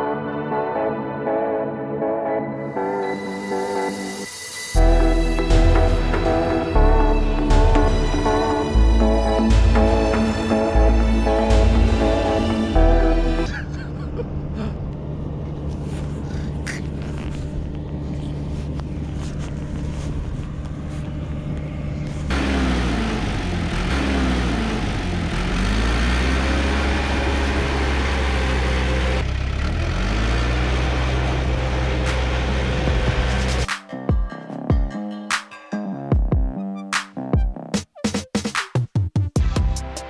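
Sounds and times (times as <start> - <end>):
bulldozer diesel engine running: 4.8 - 13.5, 15.0 - 33.6.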